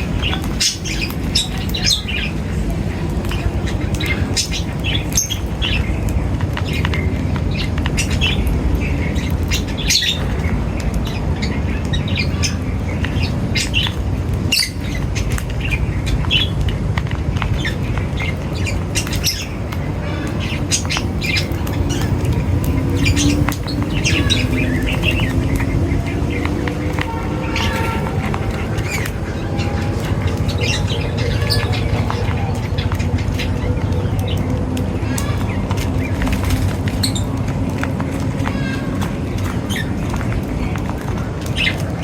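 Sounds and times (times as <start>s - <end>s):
small birds chirping and squawking: 0.0s - 42.0s.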